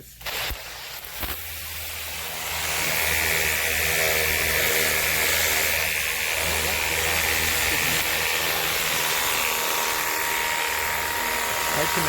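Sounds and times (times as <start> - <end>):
pump motor humming: 2.4 - 12.0.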